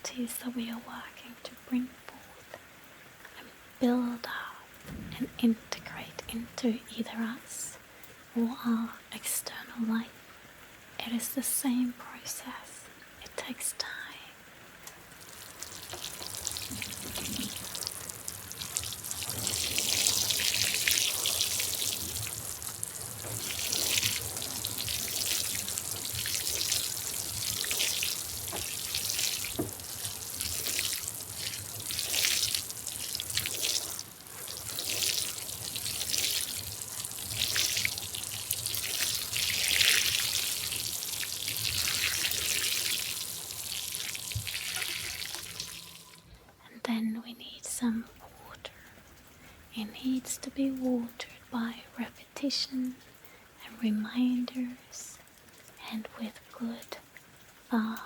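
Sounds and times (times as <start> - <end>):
water trickling and splashing: 14.5 - 46.4, 52.8 - 58.0.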